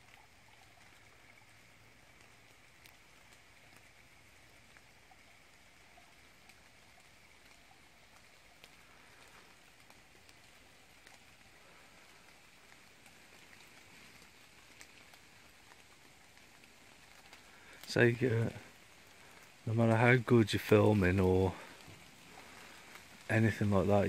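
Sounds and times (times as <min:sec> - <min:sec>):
faint steady hiss: 0:00.0 - 0:24.0
water dripping: 0:00.0 - 0:24.0.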